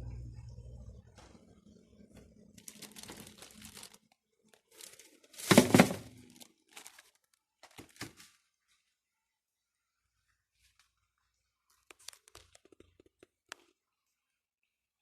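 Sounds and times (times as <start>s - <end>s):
crumpling and rustling: 2.4s - 8.8s, 11.7s - 13.8s.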